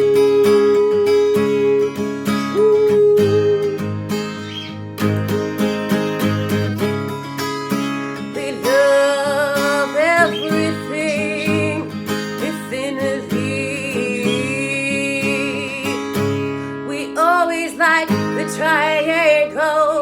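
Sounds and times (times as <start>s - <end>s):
acoustic guitar strumming: 0.0s - 20.0s
wavering held melody notes: 2.6s - 4.9s, 10.0s - 12.0s, 13.4s - 15.0s.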